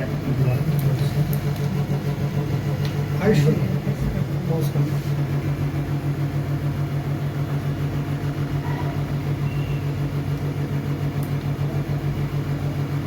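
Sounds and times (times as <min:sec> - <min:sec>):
massage gun motor pulsing: 0:00.0 - 0:08.4.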